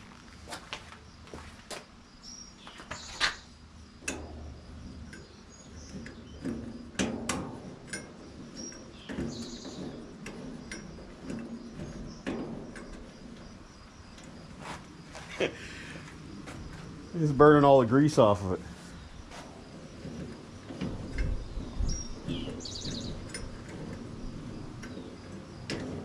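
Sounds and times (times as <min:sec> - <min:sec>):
scattered knocks and clicks: 0:04.0 - 0:26.0.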